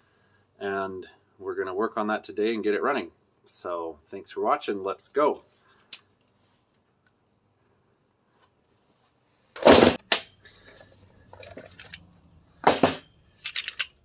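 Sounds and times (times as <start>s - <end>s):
faint handling noise: 10.4s - 12.3s
hard objects clattering on workbench: 12.6s - 13.1s.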